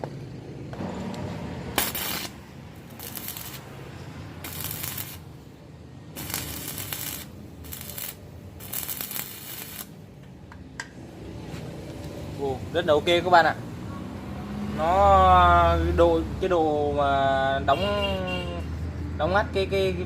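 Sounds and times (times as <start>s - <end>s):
arc welding crackling: 0.8s - 10.4s.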